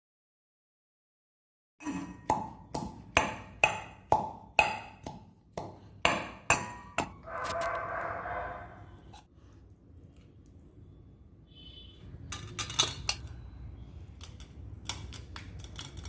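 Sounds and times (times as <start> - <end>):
pestle pounding in a mortar: 2.2 - 7.2.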